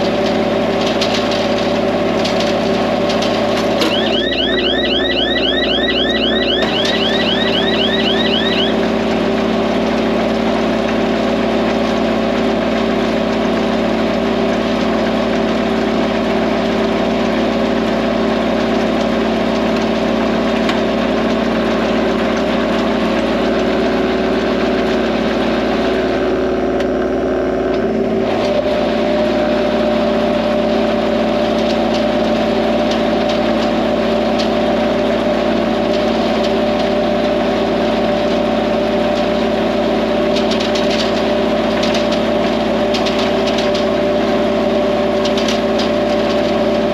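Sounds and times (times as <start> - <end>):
rising high chirps: 3.9 - 8.8.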